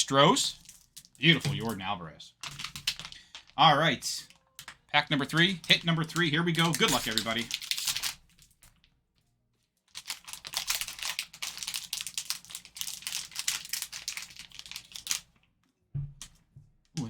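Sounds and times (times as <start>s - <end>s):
packaging tearing and crinkling: 0.5s - 1.8s, 2.4s - 3.6s, 5.2s - 8.9s, 9.9s - 15.3s.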